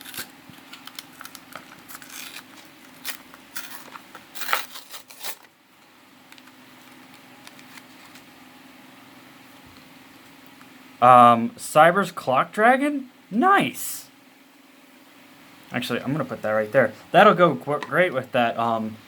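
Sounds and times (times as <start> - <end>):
foil wrapper crinkling and tearing: 0.0 - 5.6, 6.3 - 8.3
faint steady hum: 0.0 - 19.0.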